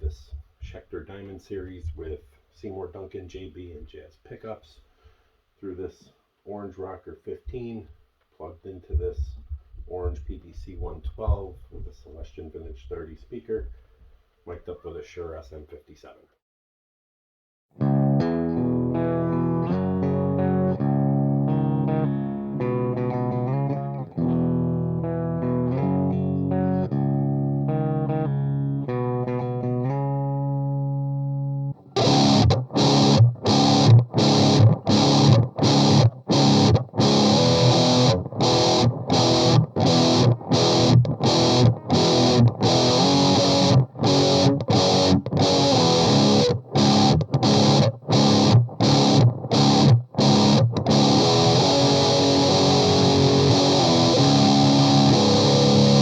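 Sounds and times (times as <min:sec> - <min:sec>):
distorted electric guitar: 0:17.8 - 0:56.0.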